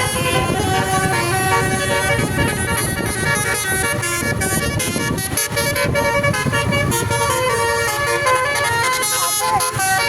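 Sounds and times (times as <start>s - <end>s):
musical bus horn playing a tune: 0.0s - 10.0s.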